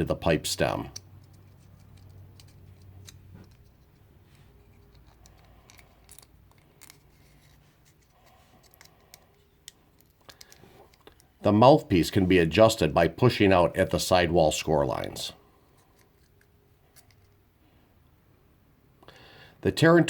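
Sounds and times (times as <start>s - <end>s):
card clicks and rustles: 0.9s - 11.4s.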